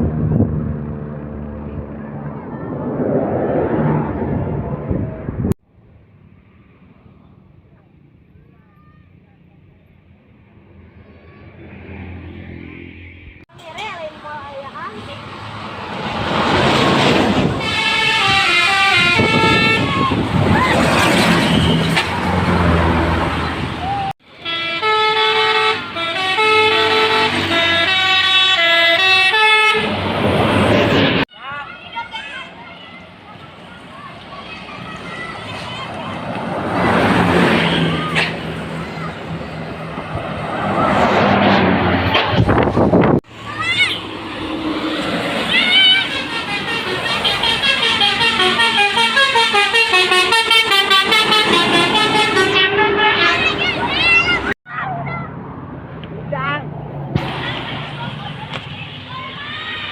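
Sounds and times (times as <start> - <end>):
rush of noise: 0.0 - 6.9, 34.3 - 46.3
bus musical horn melody: 17.6 - 20.3, 24.3 - 30.0, 45.4 - 54.4.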